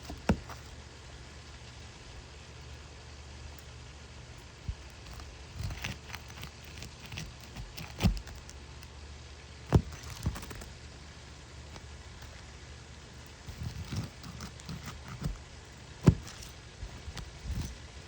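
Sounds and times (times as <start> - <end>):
low steady hum: 0.0 - 18.0
knocks and thumps: 16.0 - 17.8.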